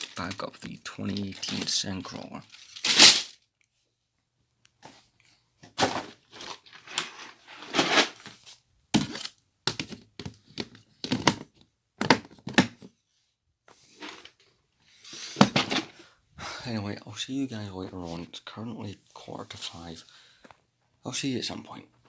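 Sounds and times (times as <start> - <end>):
boxes and plastic bags crinkling: 0.0 - 3.4, 5.6 - 11.4.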